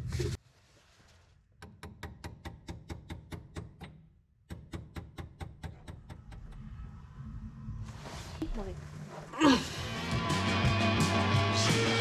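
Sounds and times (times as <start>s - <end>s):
low rumble: 6.1s - 11.0s.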